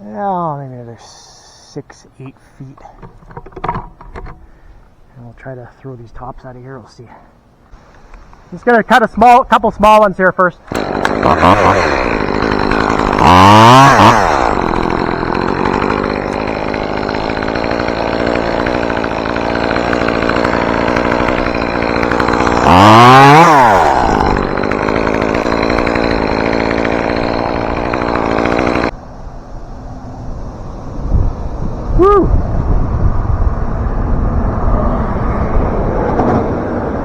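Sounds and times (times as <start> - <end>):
chainsaw revving: 10.6 - 29.0.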